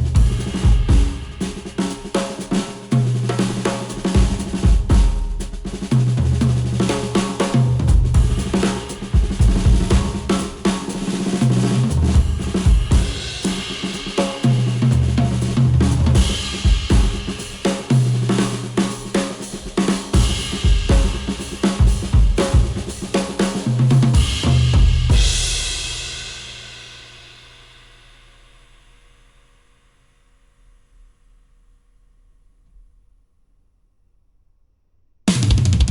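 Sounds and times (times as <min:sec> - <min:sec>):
bass line: 0:00.0 - 0:00.9
drum kit: 0:00.0 - 0:28.1, 0:35.3 - 0:35.9.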